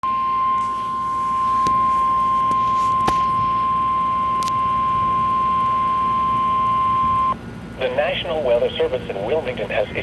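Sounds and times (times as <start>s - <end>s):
high steady alarm tone: 0.0s - 7.4s.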